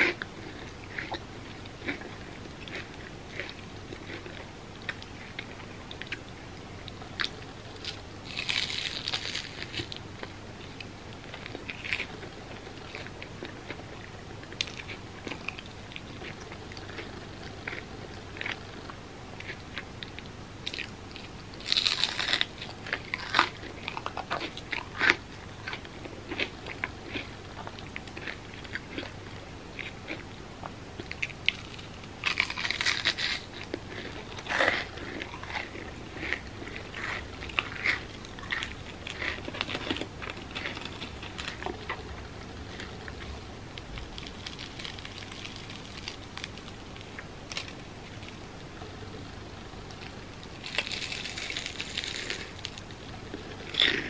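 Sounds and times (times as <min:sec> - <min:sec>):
crunching bites: 0:07.2 - 0:10.0, 0:20.7 - 0:26.5, 0:31.2 - 0:42.0, 0:42.7 - 0:48.4, 0:49.9 - 0:54.0
wet chewing: 0:42.7 - 0:48.4.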